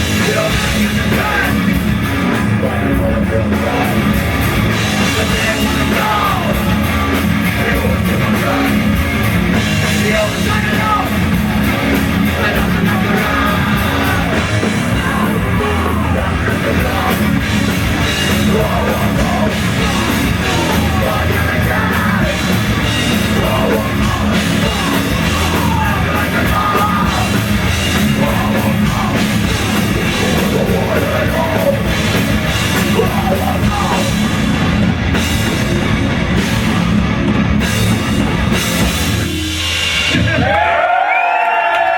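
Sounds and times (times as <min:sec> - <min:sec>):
singer yelling and singing: 0:00.0 - 0:35.4, 0:40.0 - 0:41.9
live rock band: 0:00.0 - 0:41.9.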